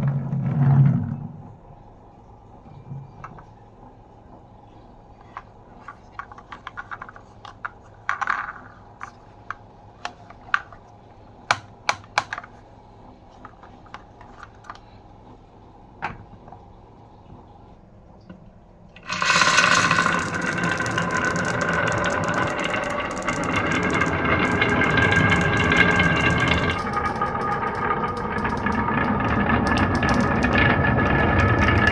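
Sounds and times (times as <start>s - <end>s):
marbles rattling through track: 5.4s - 10.8s, 19.0s - 31.9s
marbles clicking on track: 19.0s - 31.9s.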